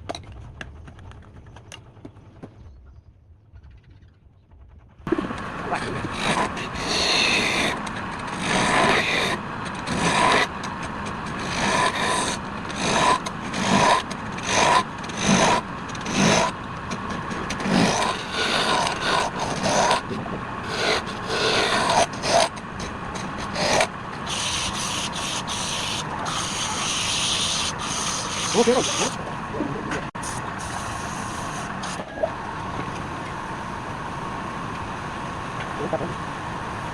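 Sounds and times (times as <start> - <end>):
wood rubbing and scraping: 5.7 - 32.2.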